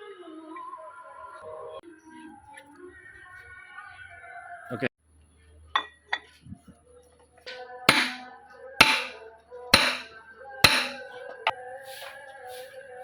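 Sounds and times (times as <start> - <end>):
background music with steady beat: 7.5 - 13.0
sharp hits: 7.9 - 9.2, 9.8 - 11.1.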